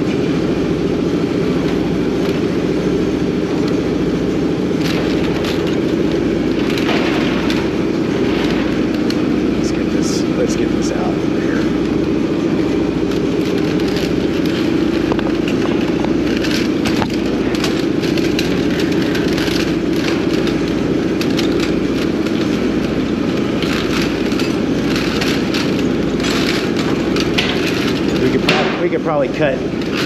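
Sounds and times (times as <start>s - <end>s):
engine droning: 0.0s - 30.0s.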